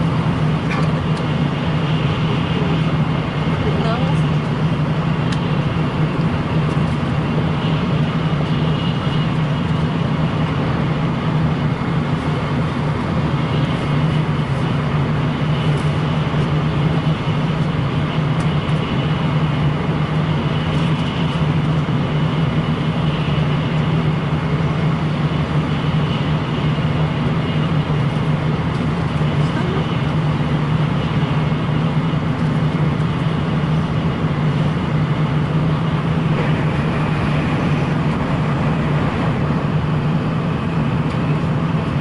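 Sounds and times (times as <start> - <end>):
train running from inside: 0.0 - 42.0.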